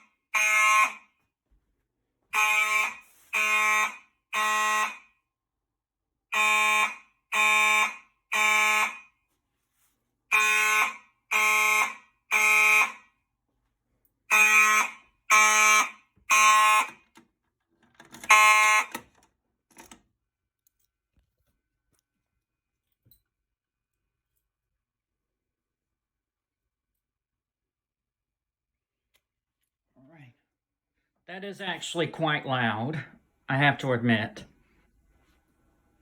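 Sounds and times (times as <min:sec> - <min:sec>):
fire alarm horn blasts: 0:00.0 - 0:01.3, 0:02.3 - 0:05.3, 0:06.3 - 0:09.3, 0:10.3 - 0:13.2, 0:14.3 - 0:17.1, 0:18.2 - 0:19.0.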